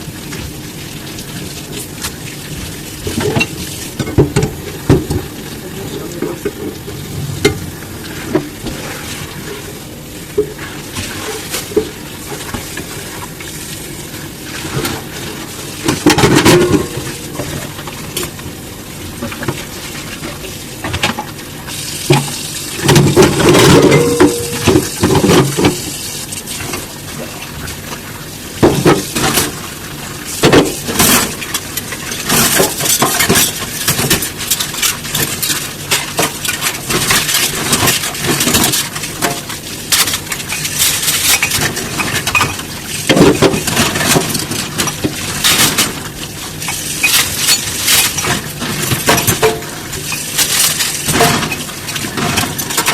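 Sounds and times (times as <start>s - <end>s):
dishes clinking: 23.4s - 25.3s.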